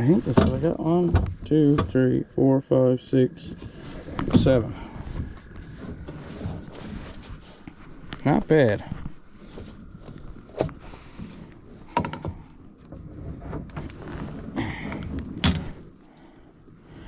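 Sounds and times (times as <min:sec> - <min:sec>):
short rustle: 0:13.7 - 0:17.0.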